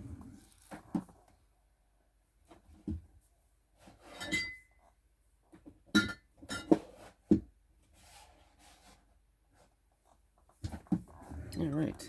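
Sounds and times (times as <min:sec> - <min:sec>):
soft rustle: 0:07.8 - 0:12.0.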